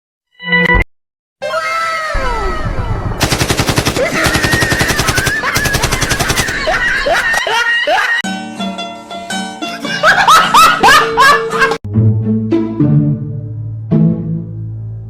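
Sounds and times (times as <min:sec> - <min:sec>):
fake machine-gun fire: 0:03.2 - 0:07.4.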